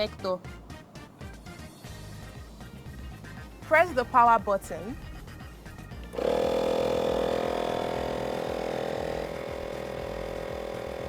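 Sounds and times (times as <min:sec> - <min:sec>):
air compressor running: 0:05.0 - 0:11.0.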